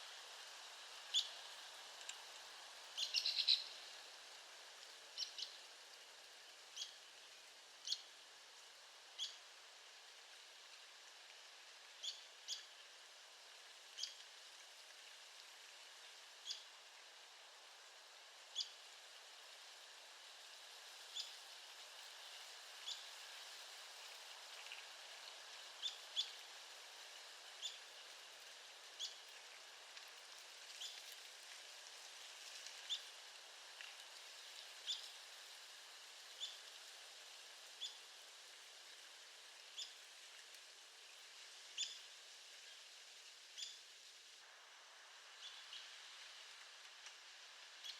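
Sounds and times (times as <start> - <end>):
faint steady hiss: 0.0 - 47.9
woodpecker call notes: 3.0 - 3.8.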